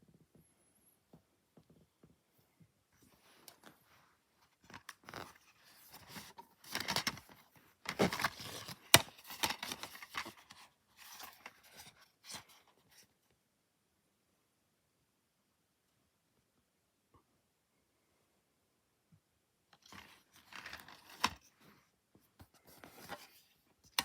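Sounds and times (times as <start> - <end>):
packaging rustling and scraping: 4.6 - 12.5.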